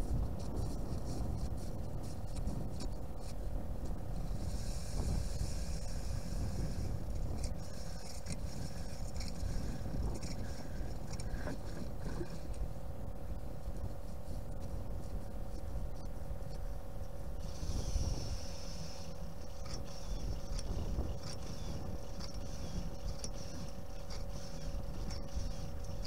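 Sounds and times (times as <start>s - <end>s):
small clicks and scrapes: 0.0s - 12.7s, 13.6s - 26.0s
faint hum: 0.0s - 26.0s
hiss: 4.3s - 7.0s, 17.4s - 19.2s.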